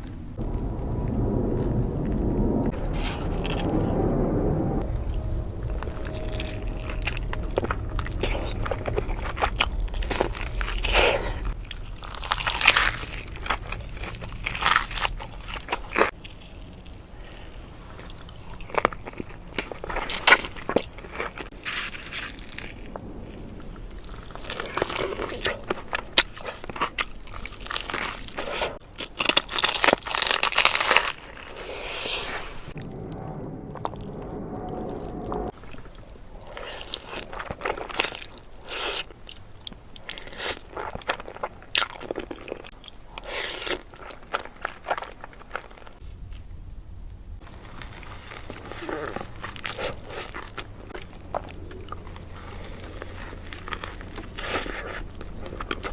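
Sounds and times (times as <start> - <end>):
crisp bites and crunchy chewing: 8.1 - 22.9, 24.3 - 32.3, 36.4 - 46.4, 47.4 - 55.9.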